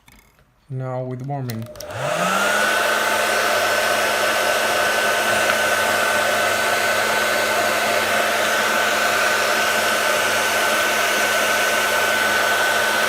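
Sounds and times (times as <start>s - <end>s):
hot-air blower whining: 1.6s - 13.0s.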